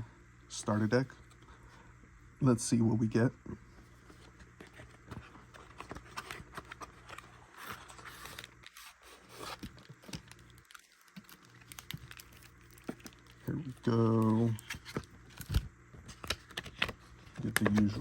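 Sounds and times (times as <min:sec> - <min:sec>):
packaging tearing and crinkling: 0:05.5 - 0:18.0.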